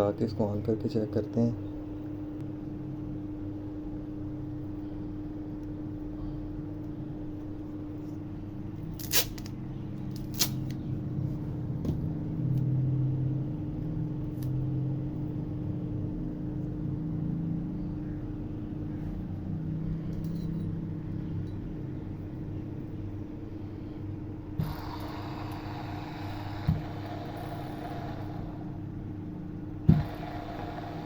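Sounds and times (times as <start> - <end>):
water pump motor humming: 24.6 - 31.0.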